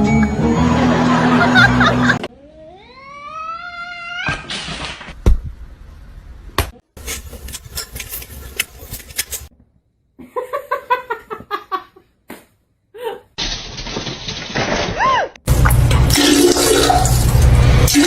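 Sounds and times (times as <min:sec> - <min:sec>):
person laughing: 0:00.9 - 0:02.3, 0:12.9 - 0:13.3.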